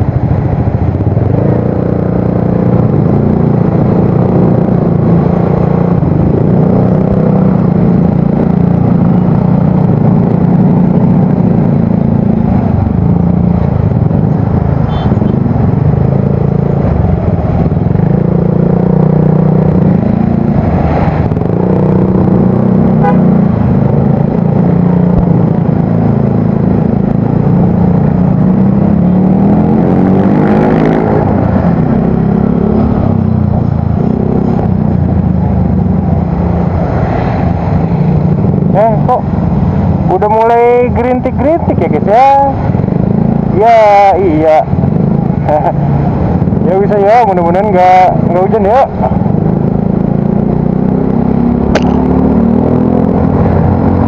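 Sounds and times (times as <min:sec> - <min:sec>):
scooter engine with deep exhaust: 0:42.1 - 0:45.8.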